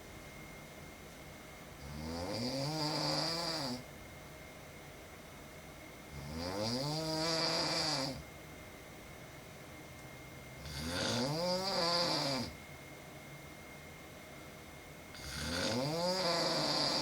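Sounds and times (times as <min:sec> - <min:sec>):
woman snoring: 0:01.8 - 0:03.8, 0:06.2 - 0:08.2, 0:10.6 - 0:12.6, 0:15.2 - 0:17.0.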